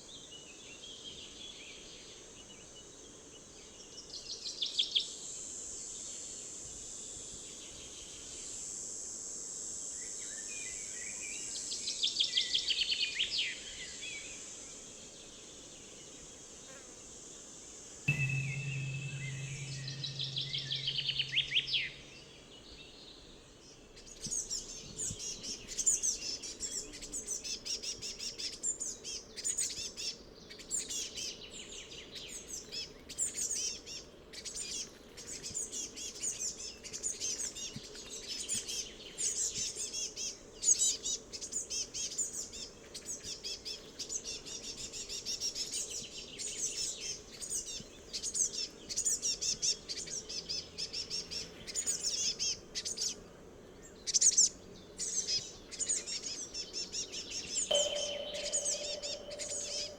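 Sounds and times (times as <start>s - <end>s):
high falling trill: 18.1s - 21.9s, 57.7s - 59.9s
low hum: 18.1s - 22.2s, 57.7s - 59.9s.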